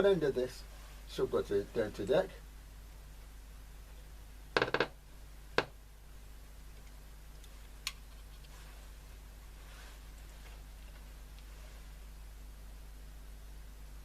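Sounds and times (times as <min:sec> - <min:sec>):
steady low hum: 0:00.0 - 0:14.0
sharp electrical clicks: 0:04.6 - 0:05.0.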